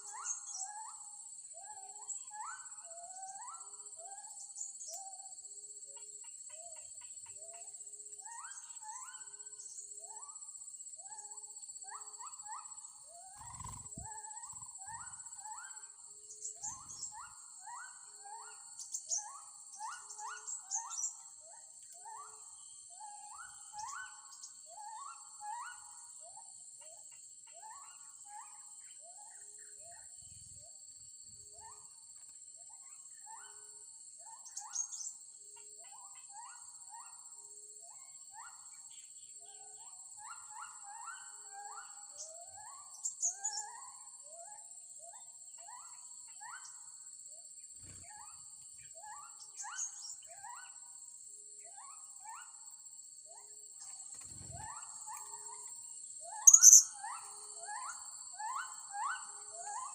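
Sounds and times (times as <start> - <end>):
high insect drone: 13.0 - 19.1, 46.6 - 59.9
parrots chirping: 56.5 - 56.8.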